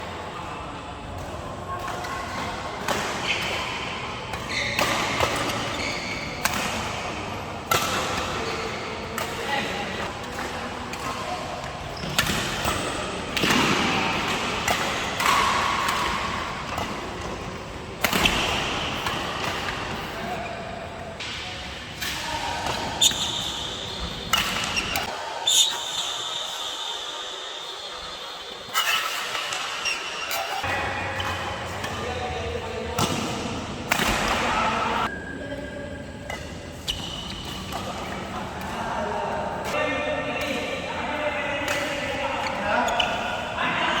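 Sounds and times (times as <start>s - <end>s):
rackets hitting shuttlecock: 1.0s - 20.4s, 30.5s - 35.2s.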